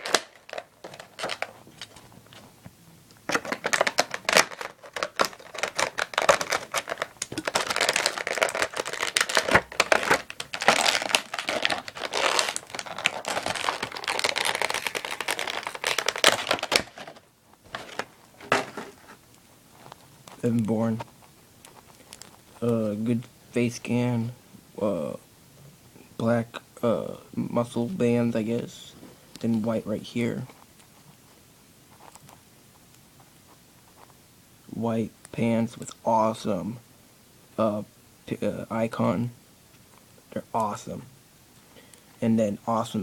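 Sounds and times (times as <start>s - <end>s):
toy packaging crinkling and tearing: 0.0s - 2.0s, 3.3s - 19.2s.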